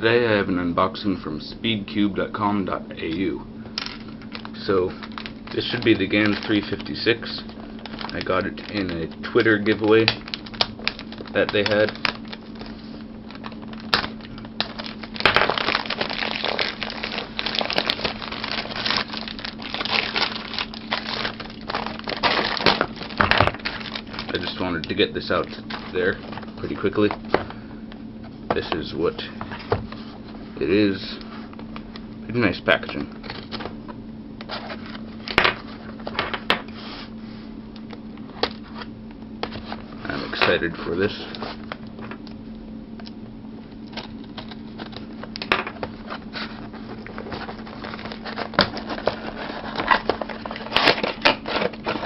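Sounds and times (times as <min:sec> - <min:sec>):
packaging crinkling and rustling: 0:03.8 - 0:27.6, 0:32.7 - 0:33.8, 0:43.8 - 0:52.0.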